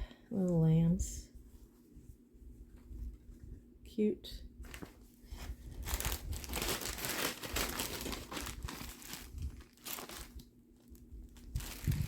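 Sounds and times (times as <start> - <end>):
fabric and plastic crinkling: 4.6 - 12.0.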